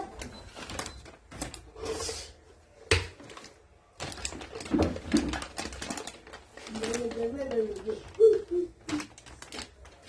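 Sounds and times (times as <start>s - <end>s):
objects clicking and clattering: 3.0s - 10.0s.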